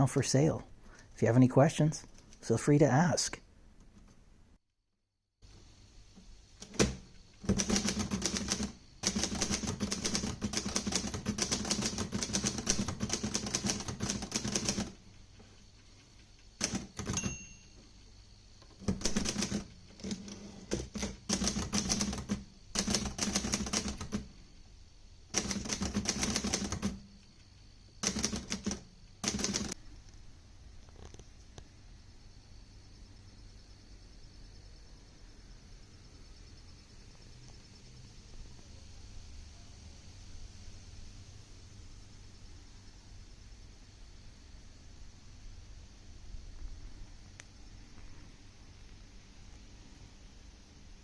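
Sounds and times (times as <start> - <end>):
typewriter bell ring: 17.0 - 17.8.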